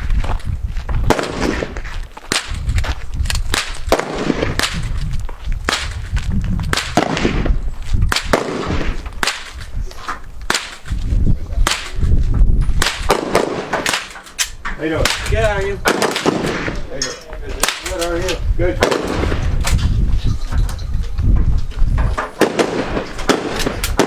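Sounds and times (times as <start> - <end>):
gunshots: 1.1 - 2.6, 3.5 - 4.9, 6.7 - 9.6, 10.5 - 10.9, 11.6 - 12.1, 12.8 - 18.2, 18.8 - 19.7, 22.4 - 24.0.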